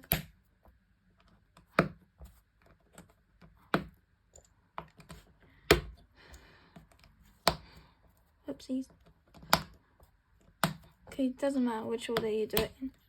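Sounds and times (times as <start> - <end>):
plastic pieces snapping together: 0.0 - 0.4, 6.8 - 7.8, 9.2 - 9.8, 10.4 - 11.1.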